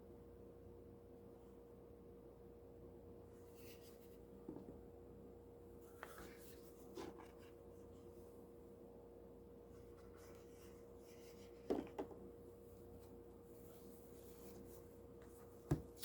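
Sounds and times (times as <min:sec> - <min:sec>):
light knocks on cardboard box: 0:15.7 - 0:16.0.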